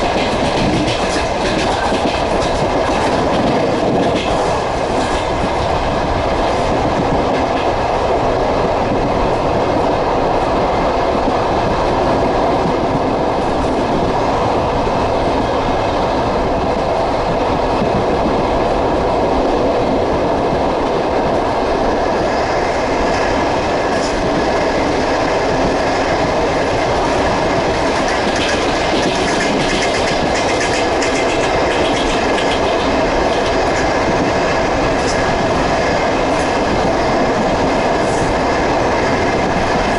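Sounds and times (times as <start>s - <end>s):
wheels clacking over rail joints: 0.0s - 7.9s, 22.3s - 39.9s
train rumble: 0.0s - 39.9s.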